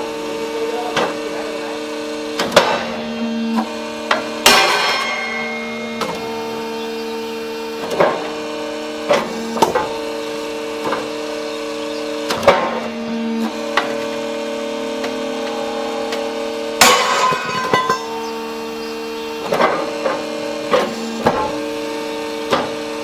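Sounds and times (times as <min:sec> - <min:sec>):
machine humming: 0:00.0 - 0:23.0
steel rail cracking and clanking: 0:13.4 - 0:18.6.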